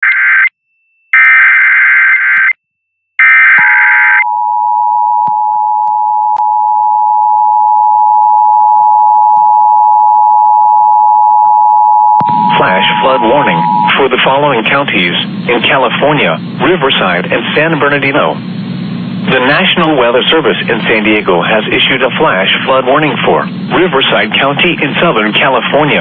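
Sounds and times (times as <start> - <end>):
two-tone alert signal: 3.2 - 14.4
data bursts: 12.2 - 20.0.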